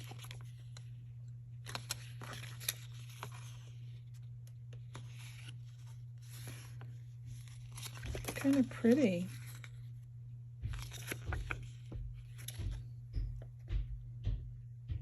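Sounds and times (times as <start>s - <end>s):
steady low hum: 0.0s - 15.0s
packaging rustling: 1.6s - 9.8s, 10.7s - 12.7s.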